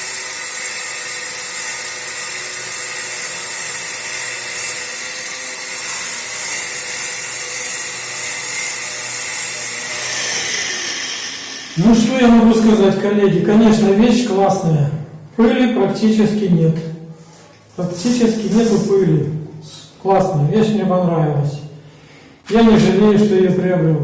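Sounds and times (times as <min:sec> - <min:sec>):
angle grinder cutting into wall: 0:00.0 - 0:12.8
shop vacuum running: 0:00.0 - 0:13.0.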